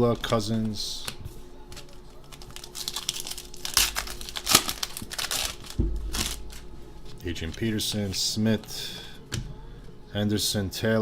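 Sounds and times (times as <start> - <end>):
card pack wrapper crinkling: 0.0 - 8.7
cards being handled: 0.0 - 8.8
dull thump: 5.8 - 6.4.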